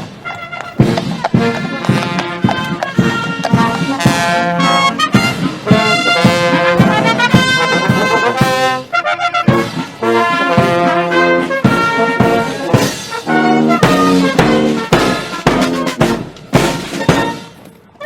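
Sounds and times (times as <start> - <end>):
sharp percussion hits: 0.0 - 8.7, 9.5 - 17.6
brass playing lively tune: 0.0 - 18.0.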